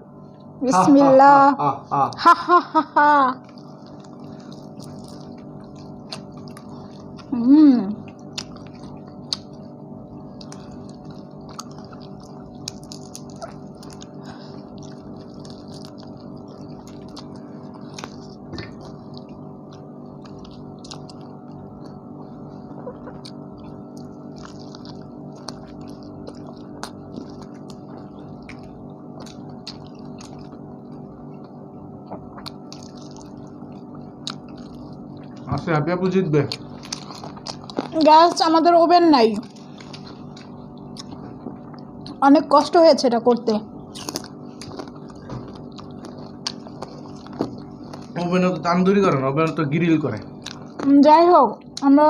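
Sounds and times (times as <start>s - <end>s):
steady low hum: 0.0s - 52.0s
people chewing food: 0.1s - 52.0s
small clicks and crackles of eating: 3.4s - 52.0s.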